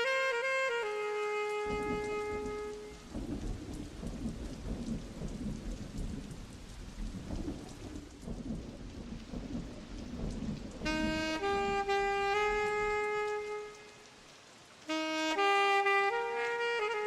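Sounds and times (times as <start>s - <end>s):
saxophone note: 0.0s - 3.2s, 10.8s - 14.1s, 14.9s - 17.0s
steady rain: 0.0s - 17.0s.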